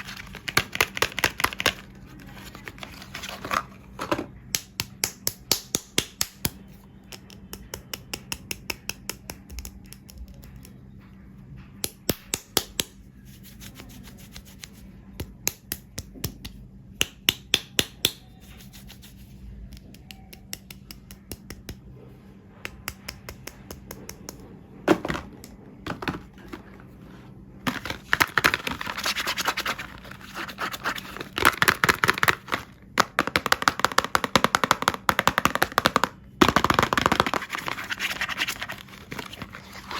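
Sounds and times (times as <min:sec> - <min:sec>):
packaging clicks and taps: 0:00.0 - 0:03.7, 0:27.7 - 0:39.9
packaging crinkling and scratching: 0:00.0 - 0:04.0, 0:27.7 - 0:39.9.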